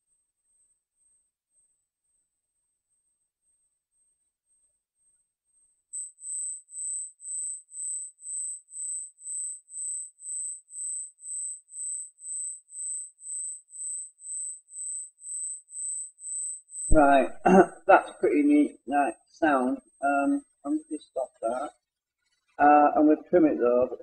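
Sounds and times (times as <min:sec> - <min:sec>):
pulsing high-pitched synth tone: 0:11.7 - 0:20.3.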